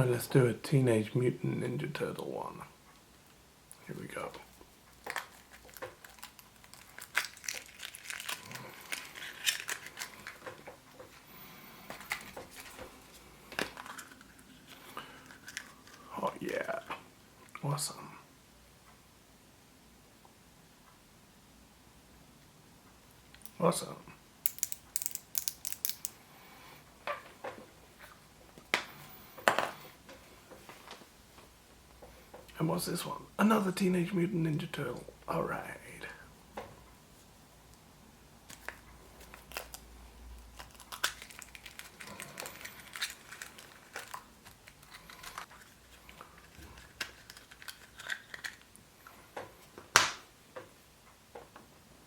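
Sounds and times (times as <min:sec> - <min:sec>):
foil wrapper crinkling and tearing: 0:05.0 - 0:10.6, 0:38.5 - 0:48.7
plastic pieces clicking: 0:24.4 - 0:26.2.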